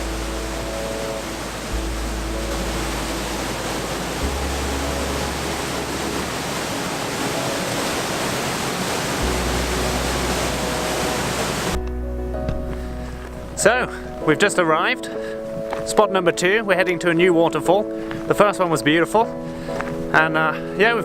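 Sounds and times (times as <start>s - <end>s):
waterfall rushing into pool: 0.0s - 11.8s.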